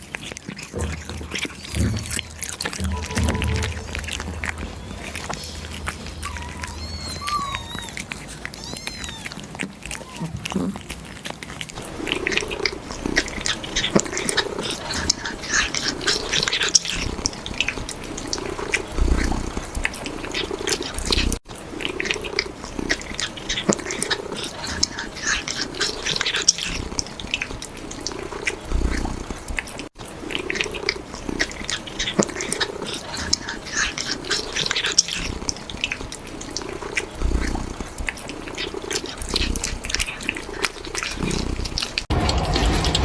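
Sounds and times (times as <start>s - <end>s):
kittens chewing meat: 0.0s - 43.0s
low rumbling purr: 0.6s - 29.7s, 30.3s - 43.0s.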